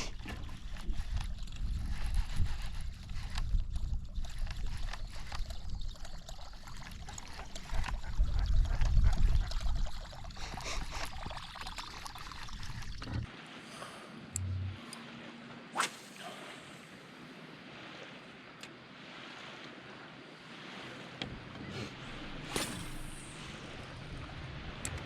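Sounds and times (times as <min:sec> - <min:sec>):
wind rumbling on microphone: 0:00.0 - 0:13.3
water lapping against boat hull: 0:00.0 - 0:15.7.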